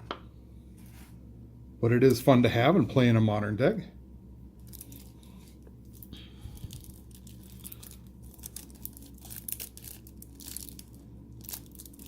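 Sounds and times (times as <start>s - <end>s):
plastic wrapping torn and crinkled: 4.6s - 12.0s.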